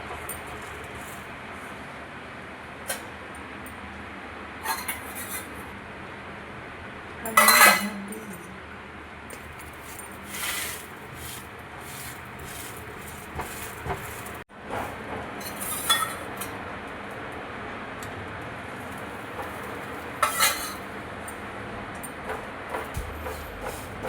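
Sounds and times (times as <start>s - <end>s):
loud clatter of kitchenware: 4.6s - 5.7s, 7.3s - 8.0s, 9.4s - 16.6s, 18.8s - 21.4s, 22.0s - 24.0s
utensils and dishes clinking: 4.6s - 5.7s, 7.3s - 8.5s, 9.3s - 16.6s, 18.8s - 21.4s, 22.0s - 24.0s.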